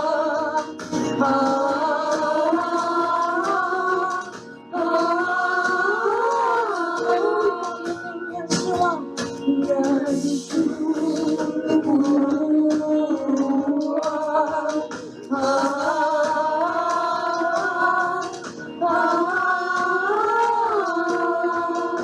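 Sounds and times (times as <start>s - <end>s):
worship music melody: 0.0s - 22.0s.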